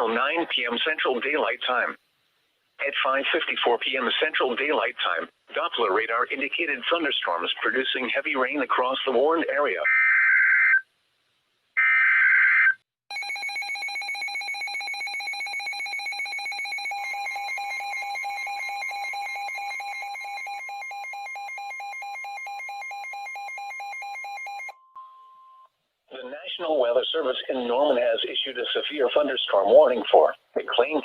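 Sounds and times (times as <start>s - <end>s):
steady warning alarm tone: 11.8s - 24.9s
rapid alarm beeps: 13.1s - 25.7s.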